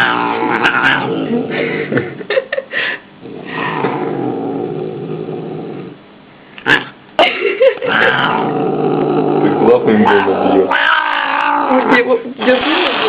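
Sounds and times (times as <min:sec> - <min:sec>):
cat growling and yowling: 0:00.0 - 0:01.5, 0:03.4 - 0:05.9, 0:07.8 - 0:12.1.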